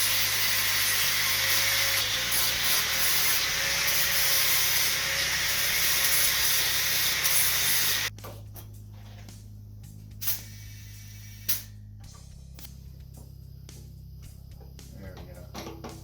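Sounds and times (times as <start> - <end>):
angle grinder smoothing metal: 0.0 - 8.1.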